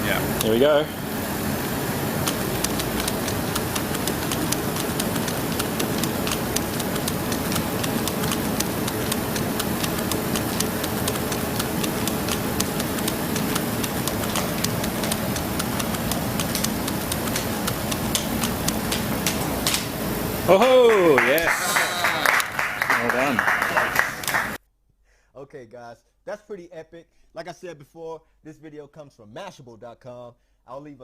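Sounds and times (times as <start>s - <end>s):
steady background hiss: 0.0s - 24.6s
plastic puzzle cubes clicking: 2.3s - 19.9s.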